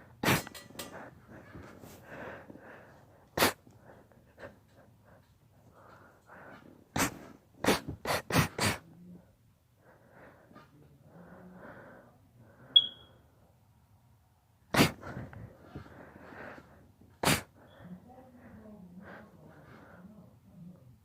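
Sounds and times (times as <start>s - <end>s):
person sneezing: 0.2s - 0.6s, 3.4s - 3.6s, 7.0s - 8.9s, 14.8s - 15.2s, 17.2s - 17.5s.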